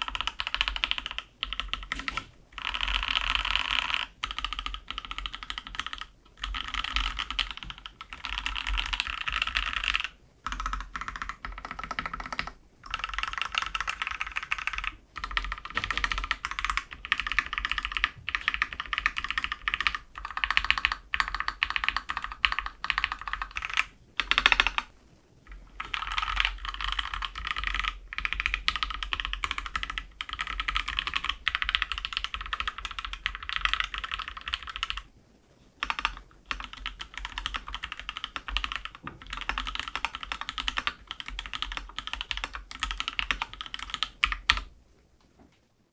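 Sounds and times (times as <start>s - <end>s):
mechanical keyboard typing: 0.0s - 24.9s, 25.8s - 35.1s, 35.8s - 44.7s.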